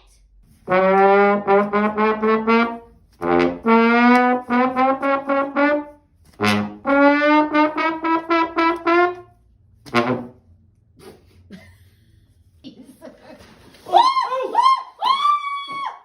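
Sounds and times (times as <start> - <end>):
brass fanfare: 0.6 - 10.5.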